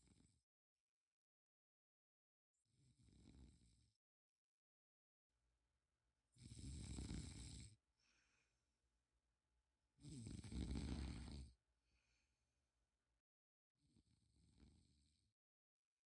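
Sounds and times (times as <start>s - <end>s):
rattling snores: 2.8s - 3.9s, 6.4s - 7.8s, 10.0s - 11.6s, 14.1s - 15.2s.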